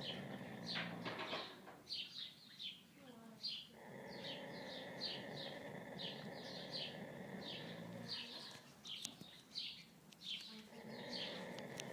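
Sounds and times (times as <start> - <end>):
pet snoring: 0.0 - 1.5, 3.7 - 8.6, 10.7 - 11.9
small bird chirping: 0.0 - 11.9.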